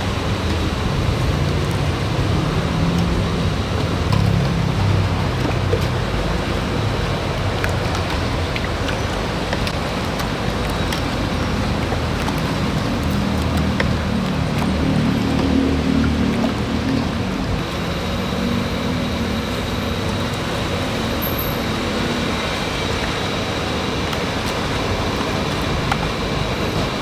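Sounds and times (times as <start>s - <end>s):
road traffic rumble: 0.0s - 27.0s.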